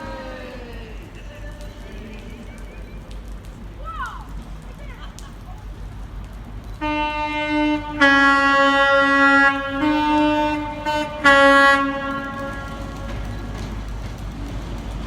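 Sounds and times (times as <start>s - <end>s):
train horn blasts: 6.8s - 13.9s.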